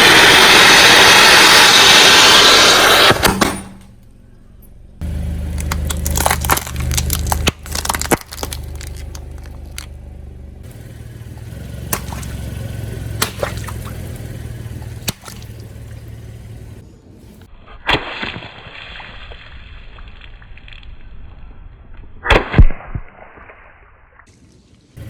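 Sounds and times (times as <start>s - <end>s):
car engine humming: 0.0s - 17.5s
tyre crushing objects: 5.0s - 10.0s, 11.9s - 12.4s.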